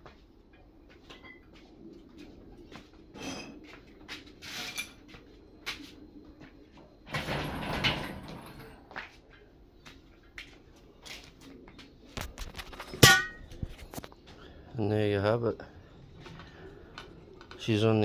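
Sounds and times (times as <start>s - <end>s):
scraping metal rattle: 7.1s - 8.8s.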